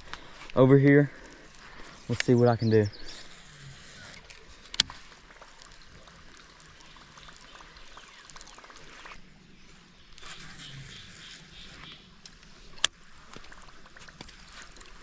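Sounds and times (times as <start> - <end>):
small ticks: 3.0 - 9.2
faint trickling water: 5.0 - 9.2, 13.0 - 15.0.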